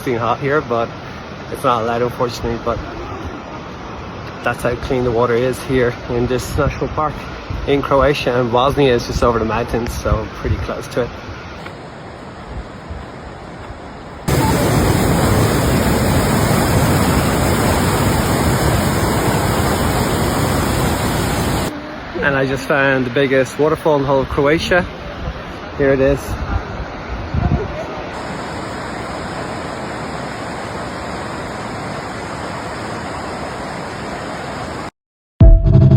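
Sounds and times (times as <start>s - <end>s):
waterfall roaring: 11.5s - 25.8s, 26.7s - 34.9s.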